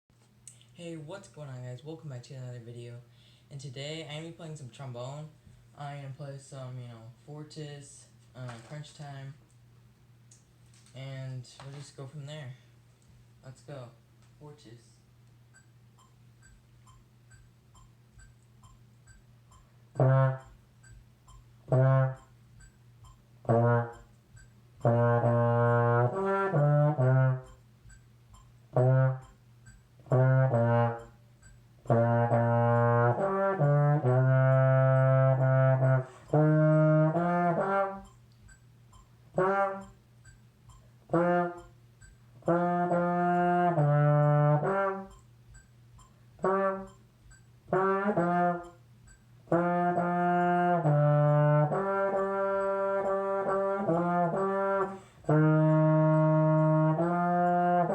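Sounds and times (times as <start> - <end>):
trombone melody: 19.9 - 20.5, 21.6 - 22.3, 23.4 - 24.1, 24.8 - 27.6, 28.7 - 29.4, 30.0 - 31.2, 31.8 - 38.2, 39.3 - 40.0, 41.1 - 41.7, 42.4 - 45.2, 46.4 - 47.0, 47.7 - 48.8, 49.4 - 57.9.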